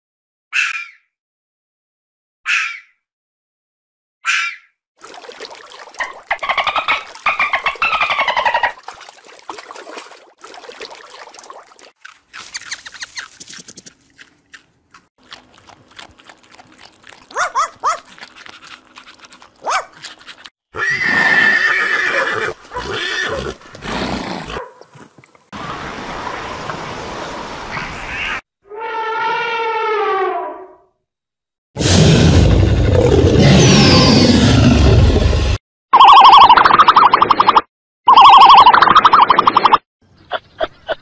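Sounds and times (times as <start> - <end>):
rough animal call: 16.0 - 25.0
horse whinnying: 20.7 - 24.6.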